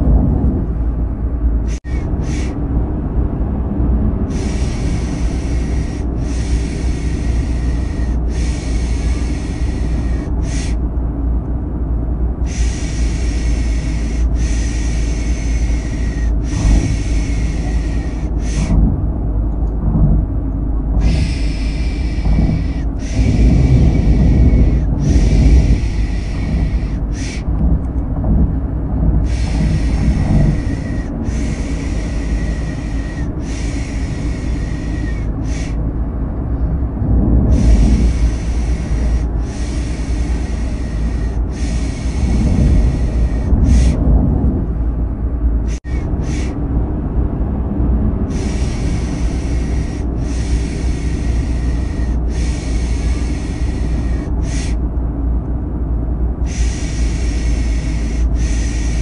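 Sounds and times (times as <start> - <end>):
car engine and road noise: 0.0 - 59.0
shushing hiss: 1.6 - 2.6, 4.2 - 10.8, 12.4 - 18.8, 21.0 - 27.5, 29.2 - 35.8, 37.4 - 44.0, 45.6 - 46.6, 48.2 - 54.8, 56.4 - 59.0.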